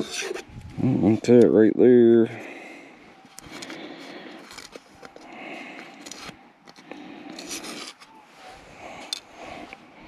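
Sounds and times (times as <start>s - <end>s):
rubbing and scraping: 0.0s - 1.3s, 7.3s - 9.1s.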